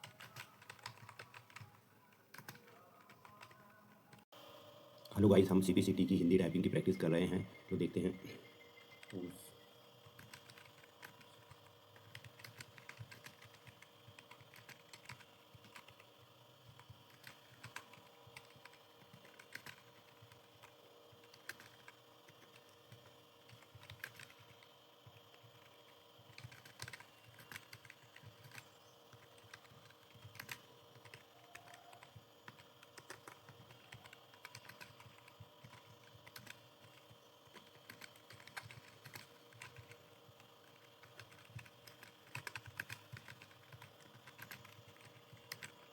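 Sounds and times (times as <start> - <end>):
keyboard typing: 0.0 - 4.3, 6.4 - 45.9
faint steady hum: 0.0 - 45.9.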